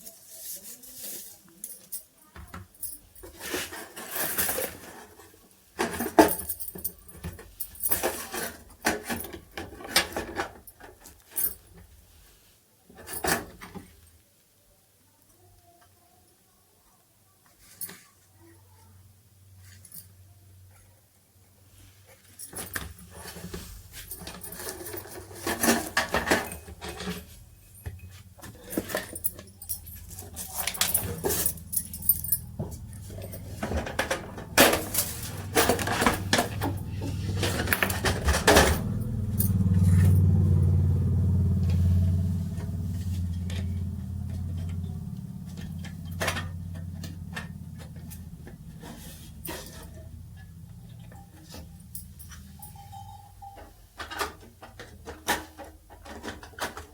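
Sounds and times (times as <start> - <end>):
metal parts clinking and rattling: 5.8 - 11.8, 22.3 - 40.3, 42.5 - 56.9
low steady hum: 23.7 - 54.2.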